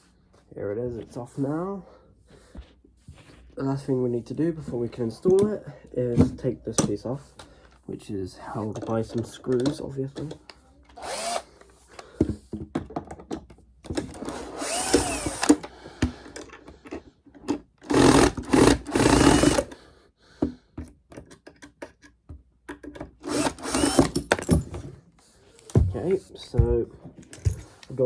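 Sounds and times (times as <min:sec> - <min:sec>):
power drill unscrewing screws: 0:08.6 - 0:11.7, 0:14.0 - 0:19.8, 0:23.2 - 0:24.8.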